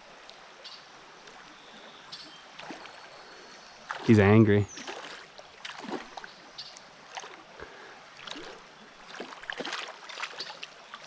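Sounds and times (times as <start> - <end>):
creek water running: 0.0 - 11.0
small splashes and knocks: 2.6 - 3.0, 3.9 - 7.4, 8.2 - 11.0.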